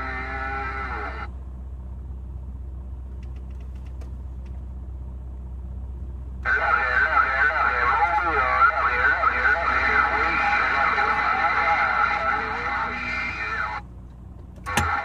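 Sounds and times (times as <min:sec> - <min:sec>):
vehicle engine idling: 0:00.0 - 0:15.0
radio static crackles: 0:06.4 - 0:13.8, 0:14.6 - 0:15.0.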